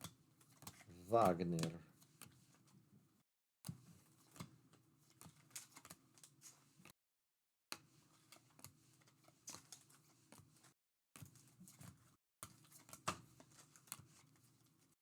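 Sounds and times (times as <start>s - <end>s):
trading cards rustling and clicking: 0.4s - 2.4s, 4.1s - 6.9s.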